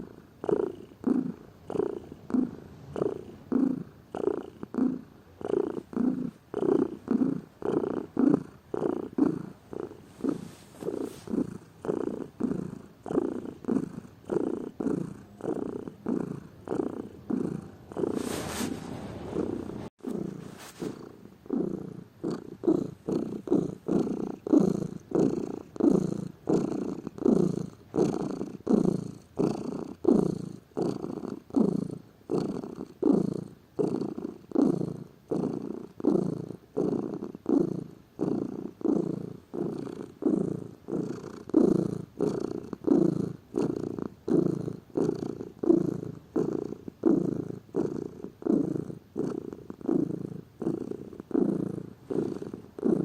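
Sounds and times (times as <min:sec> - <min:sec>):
cat purring: 0:00.0 - 0:53.0.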